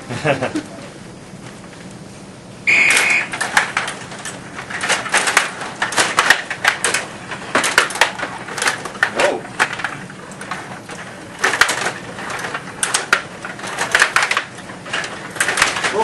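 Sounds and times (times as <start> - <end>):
short high beep: 2.7 - 3.3.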